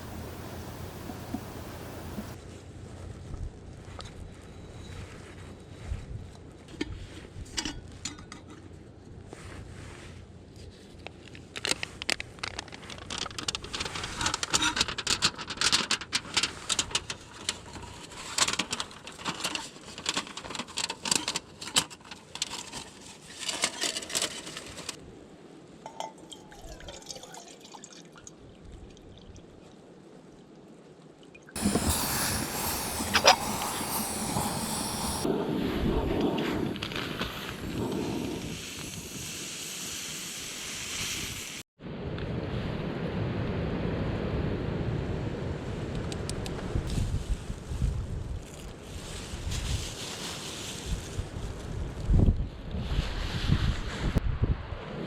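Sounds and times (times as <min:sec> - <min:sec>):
water pouring: 0:25.8 - 0:29.4, 0:31.3 - 0:35.3.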